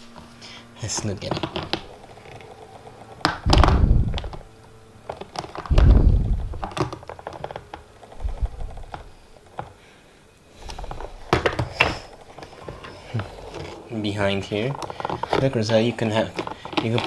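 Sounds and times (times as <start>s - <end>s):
dull thumps: 3.2s - 9.8s.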